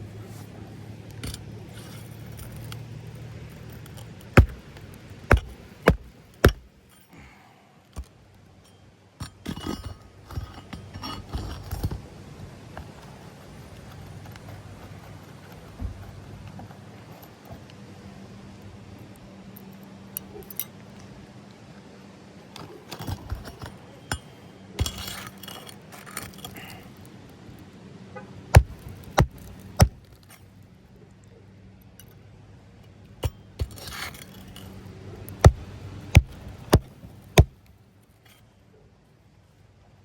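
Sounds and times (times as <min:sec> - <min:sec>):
shingles scraping and rustling: 0:00.0 - 0:07.2, 0:09.2 - 0:16.9, 0:22.6 - 0:27.1, 0:28.5 - 0:30.6, 0:33.5 - 0:37.6
hammer striking roofing nails: 0:04.4 - 0:06.7, 0:28.6 - 0:30.0, 0:35.4 - 0:37.6.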